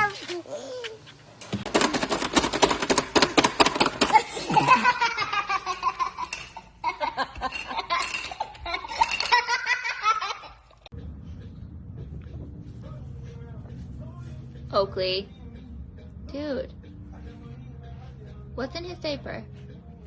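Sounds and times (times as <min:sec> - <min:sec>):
baby laughing: 0:04.0 - 0:10.9.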